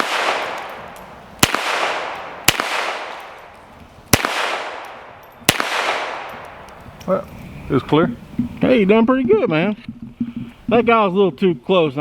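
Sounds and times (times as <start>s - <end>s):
pistol shots with echo: 0.0s - 6.8s.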